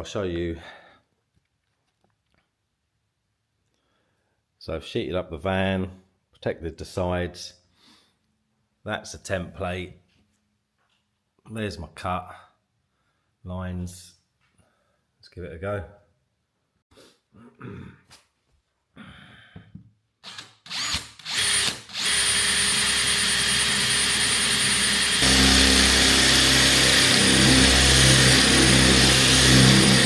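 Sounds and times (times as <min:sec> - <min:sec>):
power drill boring into metal: 0:20.2 - 0:30.0.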